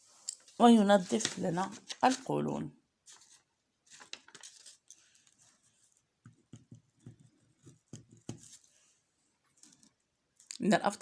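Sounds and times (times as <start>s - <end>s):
faint handling taps and rustles: 3.9s - 9.9s.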